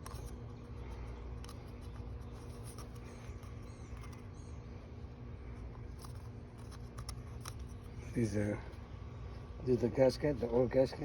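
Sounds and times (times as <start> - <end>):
faint scratching: 0.0 - 4.3
steady low hum: 0.0 - 11.0.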